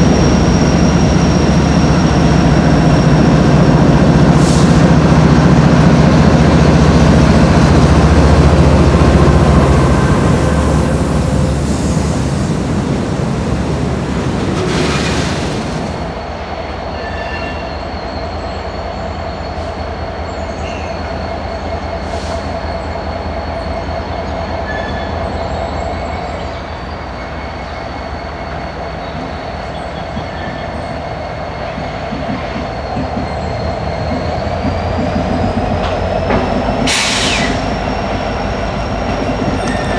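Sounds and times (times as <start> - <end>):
high wheel squeal: 0.0 - 4.7, 14.5 - 36.2, 36.8 - 39.9
diesel locomotives passing: 0.0 - 39.9
train cars rumbling past: 0.0 - 39.9.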